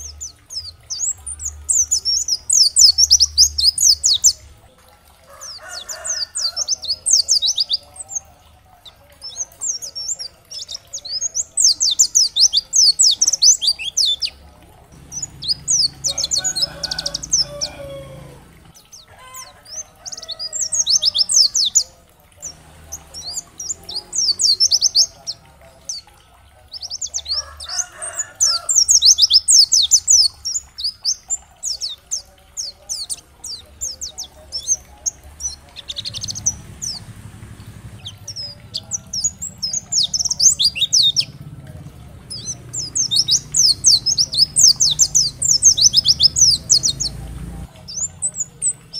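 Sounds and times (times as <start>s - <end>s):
bird high-pitched twittering: 0.0s - 4.4s, 15.0s - 41.4s, 42.3s - 48.9s
faint low warbling: 14.1s - 19.0s, 30.4s - 48.9s.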